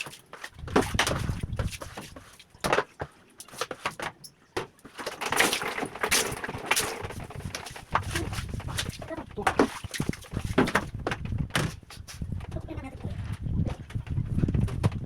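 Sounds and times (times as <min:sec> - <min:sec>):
scraping or rubbing noise: 0:04.9 - 0:11.0.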